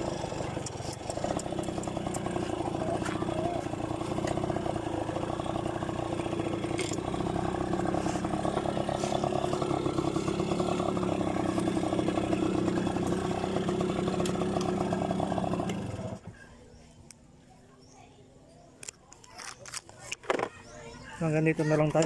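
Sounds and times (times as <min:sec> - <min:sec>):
two-stroke engine running: 0:00.0 - 0:16.4.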